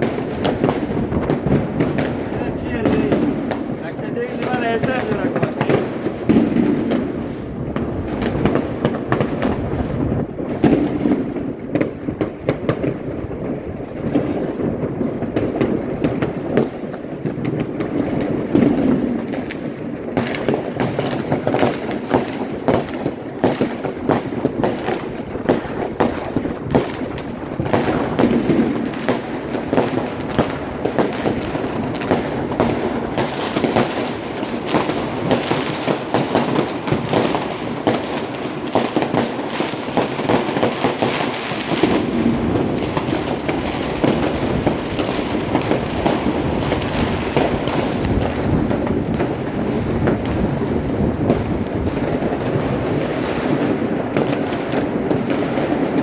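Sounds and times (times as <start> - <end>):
fireworks and firecrackers banging: 0.0 - 56.0.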